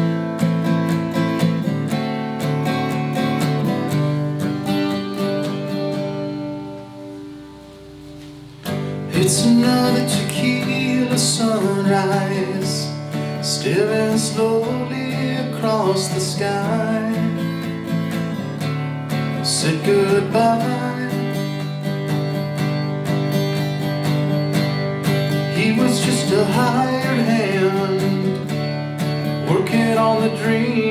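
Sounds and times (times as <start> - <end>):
guitar strumming: 0.0 - 30.9
man singing: 9.1 - 17.7, 19.4 - 21.8, 25.5 - 28.5, 29.4 - 30.9.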